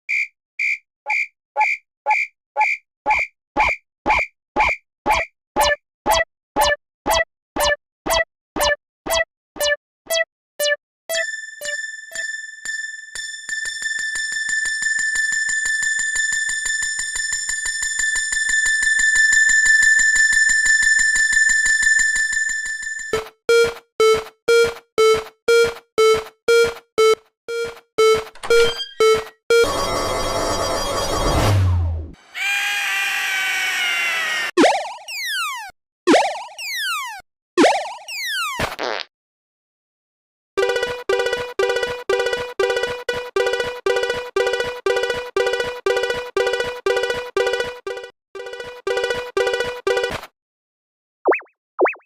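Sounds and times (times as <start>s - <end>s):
electronic level crossing bell: 9.6s - 31.5s, 40.6s - 50.1s.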